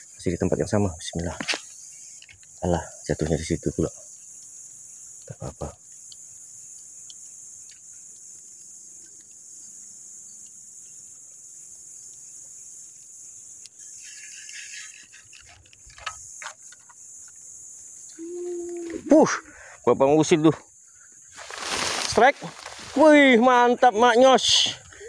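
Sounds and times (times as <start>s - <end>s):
crickets chirping: 0.0s - 25.0s.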